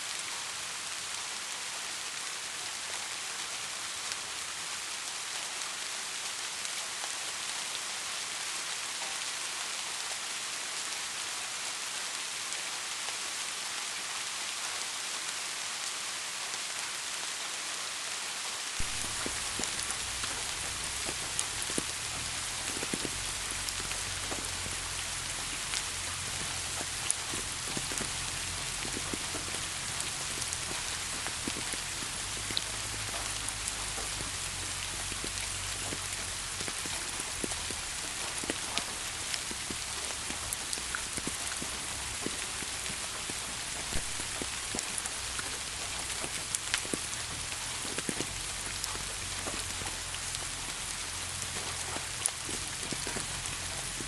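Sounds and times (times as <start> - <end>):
raindrops ticking and tapping: 0.0 - 54.0
rain hissing: 18.7 - 54.0.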